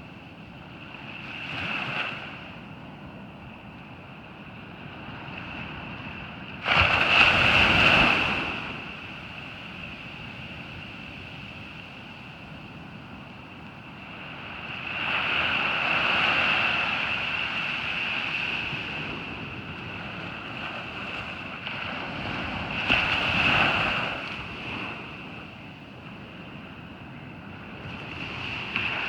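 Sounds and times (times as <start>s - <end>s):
wind buffeting microphone: 1.4s - 29.0s
ocean surf breaking: 6.6s - 9.3s.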